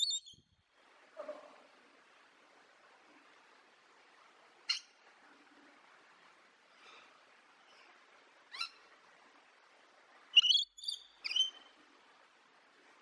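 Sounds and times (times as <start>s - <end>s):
sharp bird calls: 0.0s - 0.4s, 10.4s - 11.6s.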